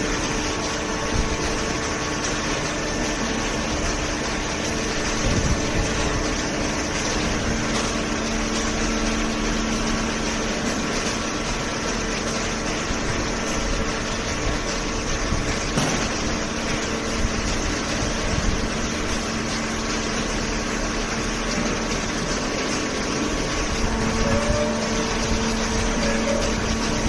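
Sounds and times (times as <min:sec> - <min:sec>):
machine humming and whirring: 0:00.0 - 0:27.0
low tone: 0:23.8 - 0:27.0.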